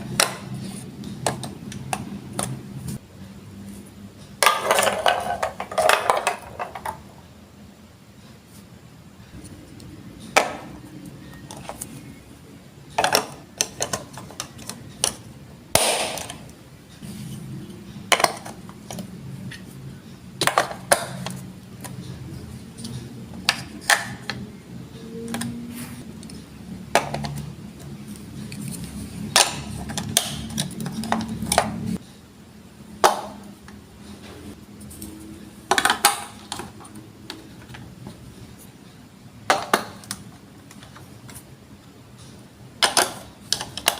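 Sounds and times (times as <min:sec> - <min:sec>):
plastic bricks clicking together: 0:42.8 - 0:43.9.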